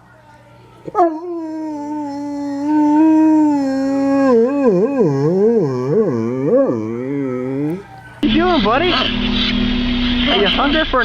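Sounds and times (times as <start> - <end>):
dog howling: 0.8 - 8.2.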